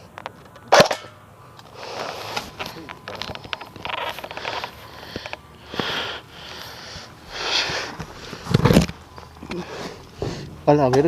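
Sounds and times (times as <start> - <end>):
person breathing hard: 4.2 - 8.8, 9.4 - 10.6.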